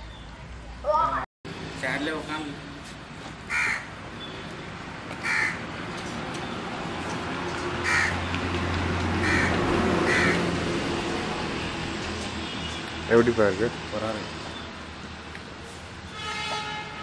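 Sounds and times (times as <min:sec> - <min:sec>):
crow cawing: 0:03.5 - 0:03.9, 0:05.2 - 0:05.6, 0:07.8 - 0:08.2, 0:09.2 - 0:10.5.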